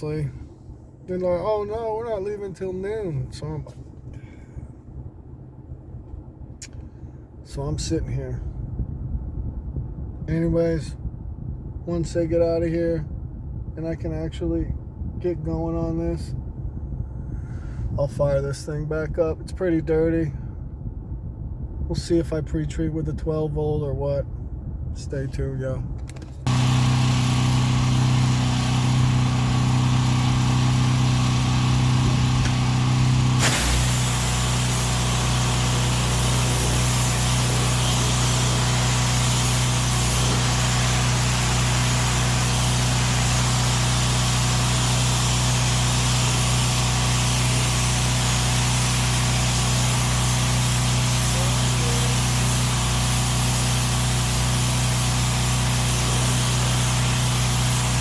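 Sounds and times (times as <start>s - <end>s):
engine running: 26.1s - 58.0s.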